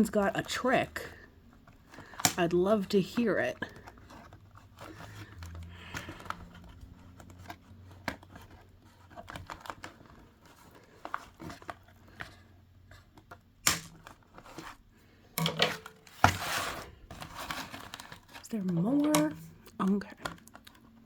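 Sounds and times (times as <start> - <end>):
doll packaging crinkling: 0.0 - 21.0.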